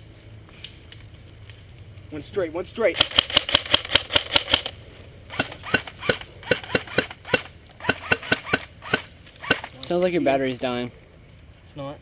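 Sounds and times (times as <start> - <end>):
airsoft rifle firing: 2.9 - 9.8.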